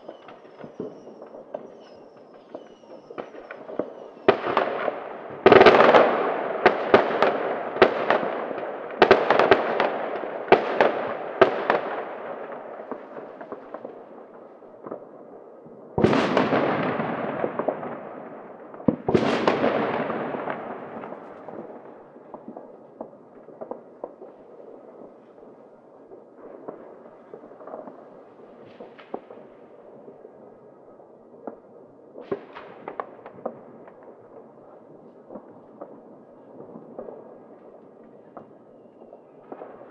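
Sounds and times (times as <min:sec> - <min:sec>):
faint firecracker pops: 0:00.0 - 0:04.7, 0:26.6 - 0:29.5, 0:32.2 - 0:34.2
fireworks bangs and crackles: 0:00.0 - 0:39.9.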